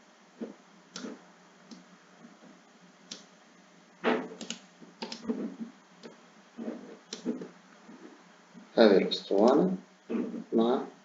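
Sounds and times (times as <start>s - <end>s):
computer mouse clicks: 1.0s - 1.8s, 4.4s - 5.3s.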